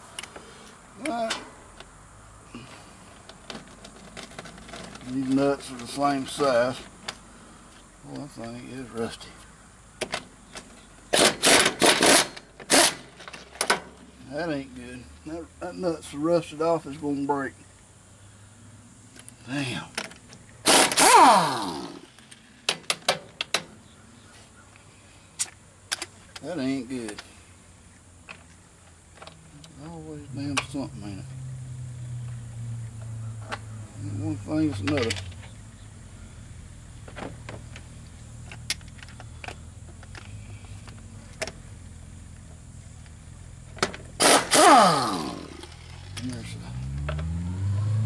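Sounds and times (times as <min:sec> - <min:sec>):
power tool whirring: 0:11.2 - 0:13.0, 0:20.6 - 0:22.2, 0:44.2 - 0:46.2
man groaning: 0:21.0 - 0:22.0.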